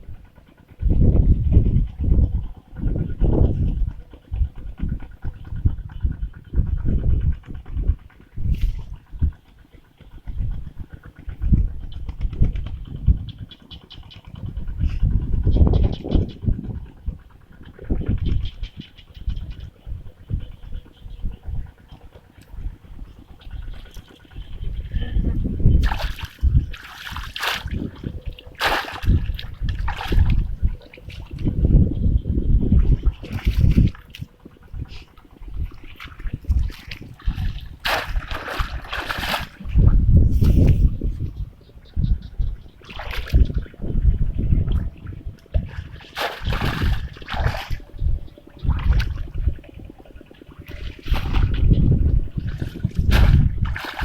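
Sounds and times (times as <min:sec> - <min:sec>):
water splashing and sloshing: 0:21.9 - 0:31.9, 0:32.6 - 0:41.2, 0:42.7 - 0:54.0.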